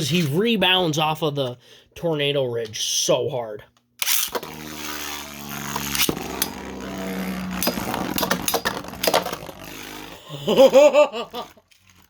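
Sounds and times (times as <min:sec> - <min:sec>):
spinning tops whirring: 0:04.0 - 0:12.0
plastic tops colliding: 0:05.7 - 0:10.1.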